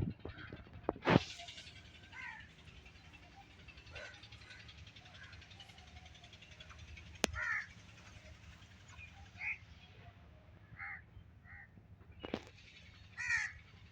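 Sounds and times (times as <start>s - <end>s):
crow cawing: 2.1s - 2.5s, 7.3s - 7.8s, 10.8s - 11.7s, 13.2s - 13.6s.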